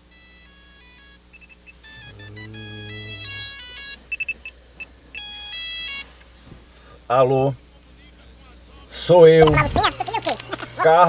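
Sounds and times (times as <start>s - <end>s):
phone ringtone beeping melody: 0.1s - 4.5s, 5.2s - 6.1s.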